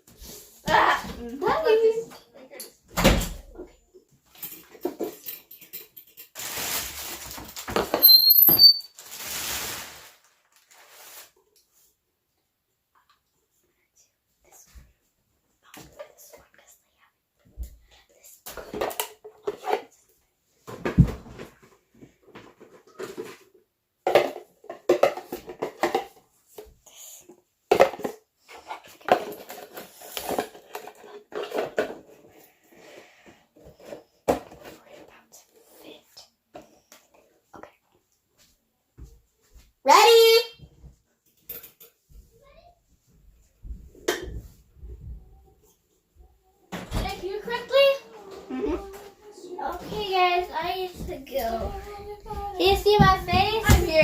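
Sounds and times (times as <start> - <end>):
handling and rustling: 4.2 - 11.8, 20.6 - 26.7, 27.7 - 32.5
containers and utensils clattering: 4.3 - 10.0, 20.7 - 26.4, 27.7 - 32.3
high-pitched squeaks: 8.0 - 9.1.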